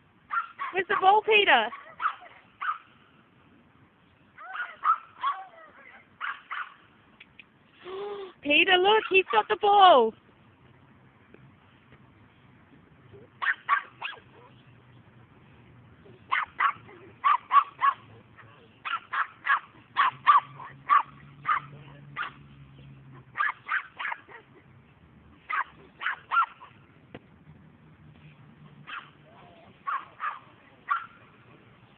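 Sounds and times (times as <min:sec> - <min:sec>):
puppy yapping: 0:01.7 - 0:02.8, 0:04.4 - 0:06.8, 0:13.2 - 0:14.6, 0:16.2 - 0:22.4, 0:23.1 - 0:24.6, 0:25.5 - 0:26.8, 0:28.9 - 0:31.2.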